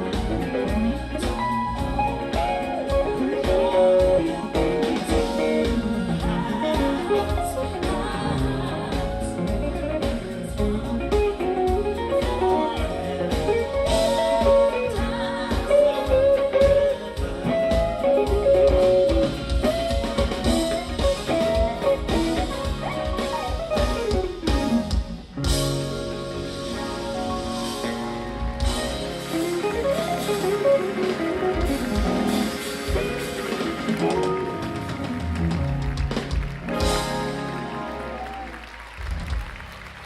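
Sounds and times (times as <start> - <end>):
person singing: 0.0 - 23.9
bass: 0.0 - 40.0
drums: 0.0 - 40.0
electric guitar runs: 0.0 - 40.0.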